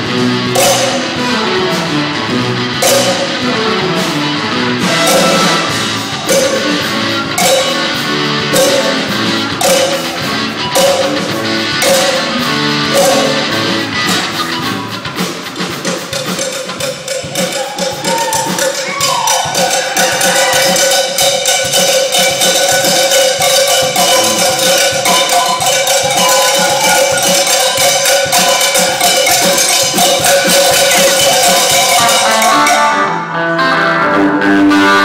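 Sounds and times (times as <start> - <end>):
live rock band playing: 0.0 - 35.0
cowbell strikes: 0.6 - 1.2, 2.8 - 3.4, 4.9 - 14.2, 15.8 - 33.2.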